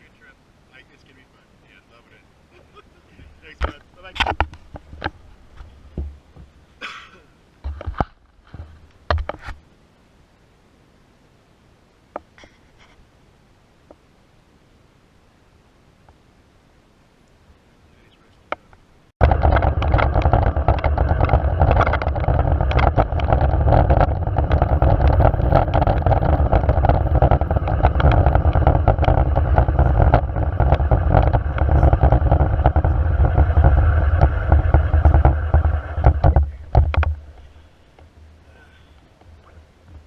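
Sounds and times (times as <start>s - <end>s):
small clicks and rattles: 18.7s - 38.1s
loud rushing noise: 19.2s - 37.6s.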